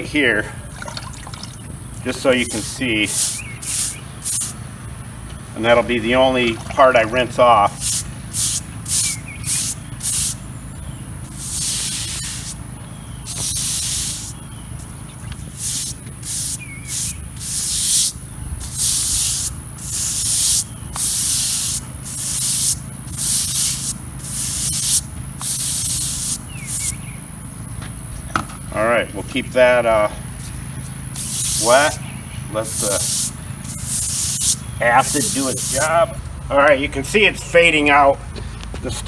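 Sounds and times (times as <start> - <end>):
spray nozzle hissing bursts: 2.0 - 4.7, 5.6 - 10.5, 11.2 - 27.1, 30.4 - 36.2.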